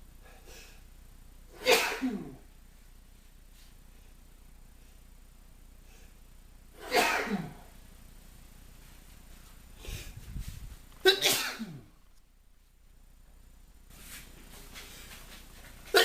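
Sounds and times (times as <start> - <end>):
man sneezing: 1.6 - 2.4, 6.8 - 7.7, 11.0 - 11.9.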